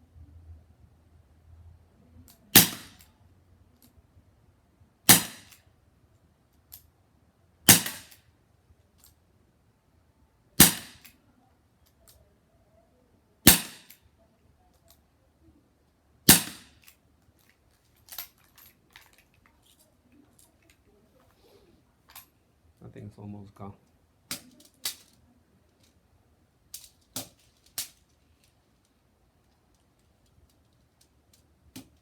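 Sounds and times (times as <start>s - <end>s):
air revolver shots: 2.6s - 3.0s, 5.1s - 5.6s, 7.7s - 8.2s, 10.6s - 11.1s, 13.5s - 14.0s, 16.3s - 16.8s
weak air gun pop: 13.5s - 13.9s.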